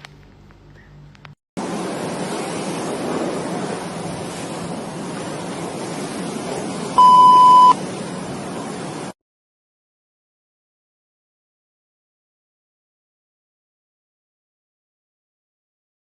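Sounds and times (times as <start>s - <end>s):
steady rushing noise: 1.6s - 9.2s
loud high electronic beep: 7.0s - 7.8s.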